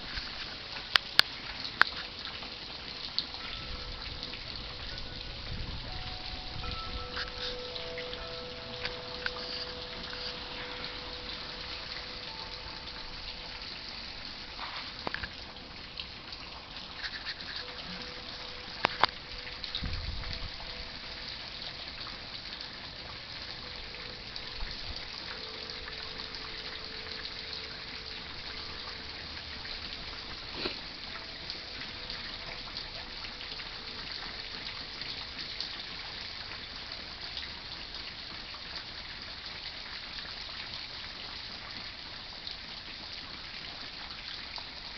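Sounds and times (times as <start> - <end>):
hard rain hissing: 0.0 - 44.9
wind chimes ringing: 3.4 - 15.9, 17.5 - 30.4.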